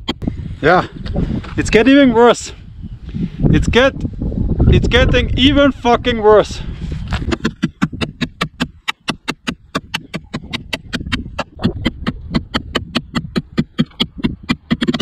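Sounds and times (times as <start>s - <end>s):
knife striking sheet metal: 7.3s - 15.0s.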